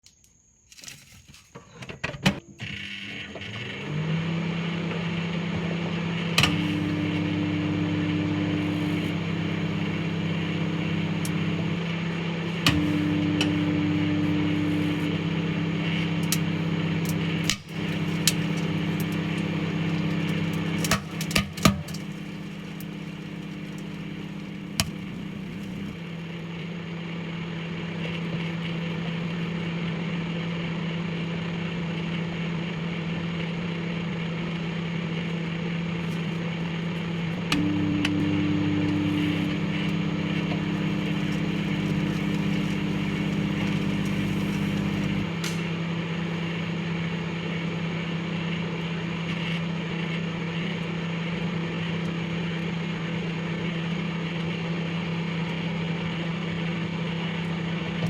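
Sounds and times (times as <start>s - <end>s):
microwave oven humming: 3.1s - 57.8s
sharp clicks and pops: 6.4s - 11.8s, 12.5s - 26.2s, 37.4s - 46.0s.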